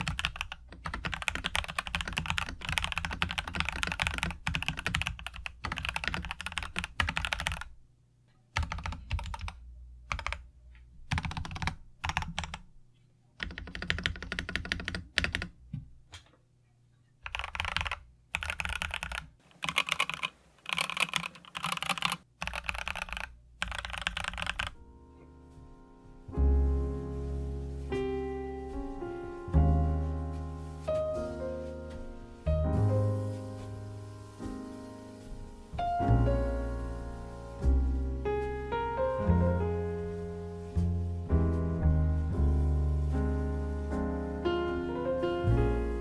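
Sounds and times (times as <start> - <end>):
mechanical keyboard typing: 0.0 - 7.7, 8.6 - 10.5, 11.1 - 12.6, 13.4 - 15.6, 17.2 - 24.8
piano music: 24.2 - 46.0.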